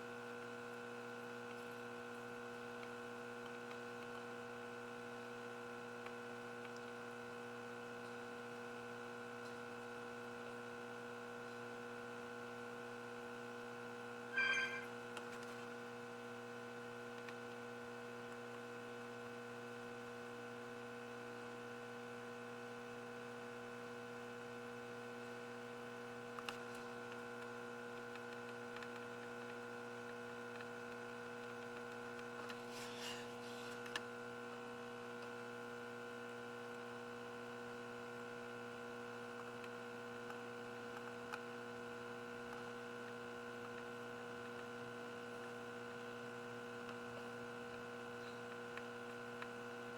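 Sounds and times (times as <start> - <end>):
electrical mains hum: 25.2 - 49.9.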